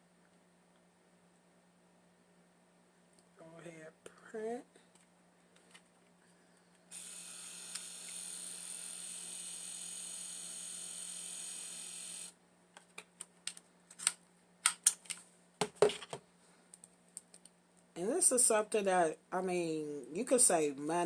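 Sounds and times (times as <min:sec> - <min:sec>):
label maker motor whirring: 0:06.9 - 0:12.3.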